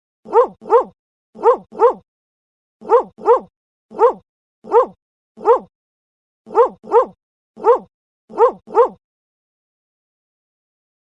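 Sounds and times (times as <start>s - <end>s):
dog barking: 0.3s - 2.0s, 2.8s - 5.7s, 6.5s - 9.0s.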